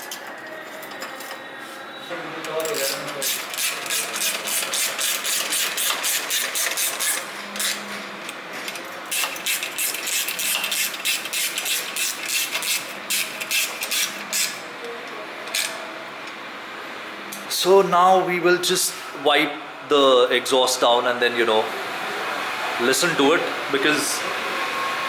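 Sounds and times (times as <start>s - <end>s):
ratchet wrench clicking: 2.7s - 7.8s, 9.1s - 14.6s.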